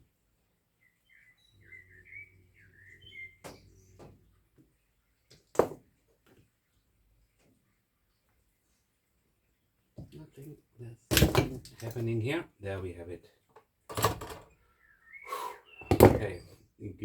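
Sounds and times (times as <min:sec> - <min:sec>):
small bird chirping: 0:00.7 - 0:05.5, 0:14.4 - 0:17.0.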